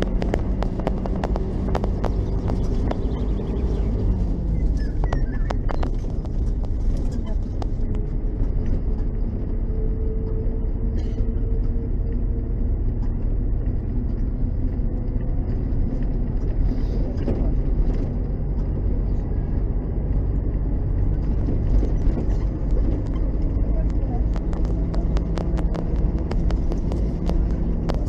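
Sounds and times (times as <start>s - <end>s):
bus engine rumbling: 0.0s - 28.0s.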